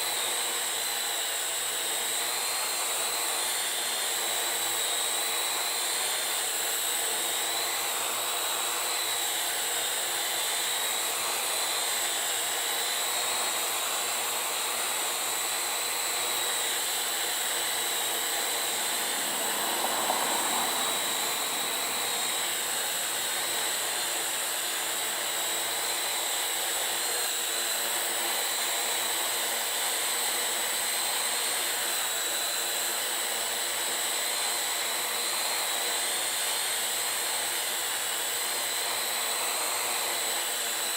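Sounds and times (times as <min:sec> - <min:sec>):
quadcopter propellers whirring: 0:00.0 - 0:40.9.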